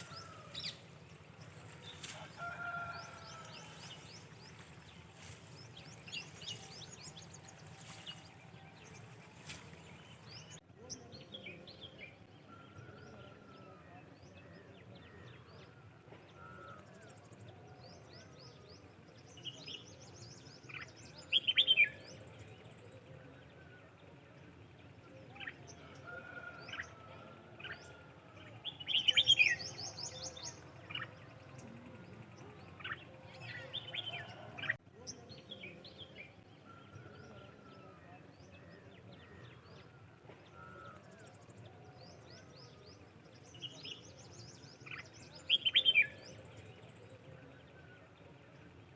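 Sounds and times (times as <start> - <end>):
birds chirping: 0.0 - 10.6
low outdoor background hum: 0.0 - 48.9.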